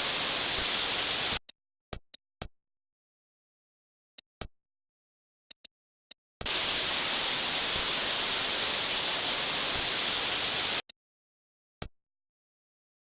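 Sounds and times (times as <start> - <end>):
static hiss: 0.0 - 1.4, 6.4 - 10.8.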